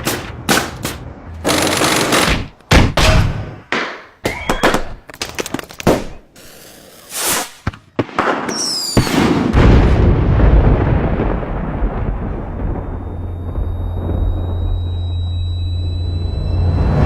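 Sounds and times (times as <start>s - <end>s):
heavy rumbling boom: 9.6s - 17.0s
brief whistle: 13.2s - 17.0s.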